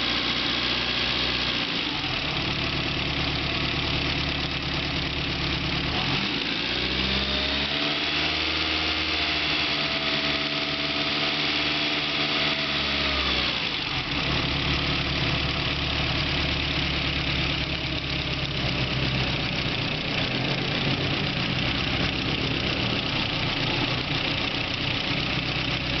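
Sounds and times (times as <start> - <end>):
car engine idling and revving: 0.0 - 26.0
engine ticking noise: 16.6 - 26.0.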